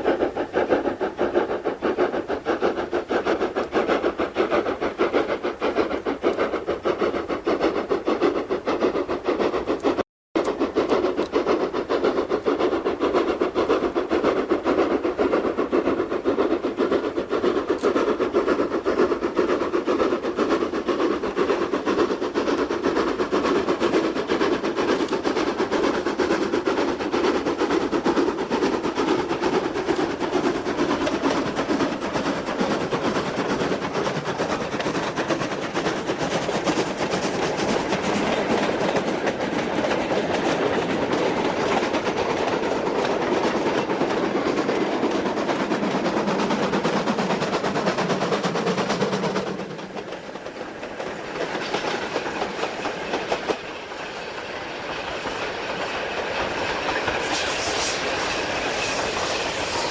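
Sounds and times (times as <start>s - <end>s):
steam locomotive running: 0.0s - 59.9s
wheels clattering on rails: 21.9s - 59.9s.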